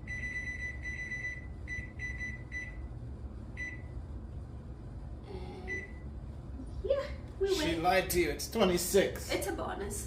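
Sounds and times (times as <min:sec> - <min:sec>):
oven keypad beeps: 0:00.0 - 0:02.9, 0:03.6 - 0:03.9, 0:05.7 - 0:06.0
steady low hum: 0:00.0 - 0:10.0.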